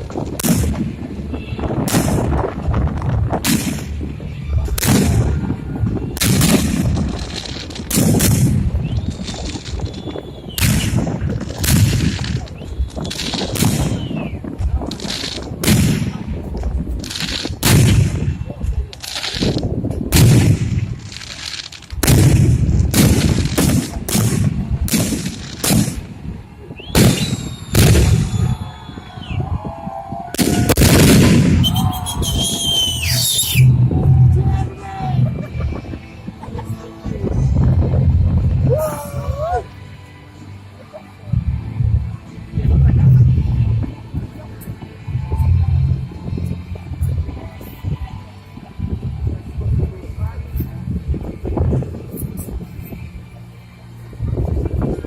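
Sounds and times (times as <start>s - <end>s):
firework shells bursting: 27.0s - 28.5s.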